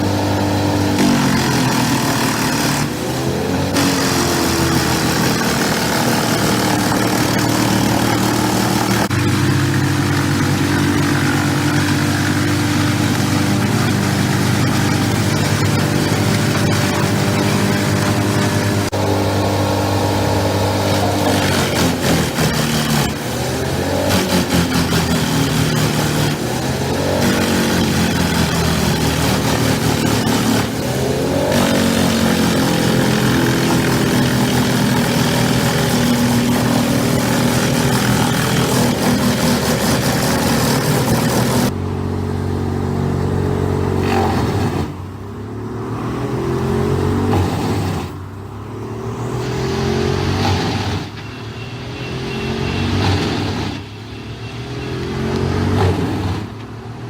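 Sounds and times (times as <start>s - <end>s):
wood being chipped: 0.0s - 41.7s
wood chipper engine running: 0.0s - 48.0s.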